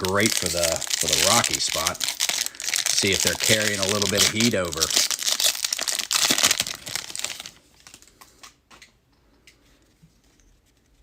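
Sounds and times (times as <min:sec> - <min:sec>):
foil wrapper tearing and crinkling: 0:00.0 - 0:08.0.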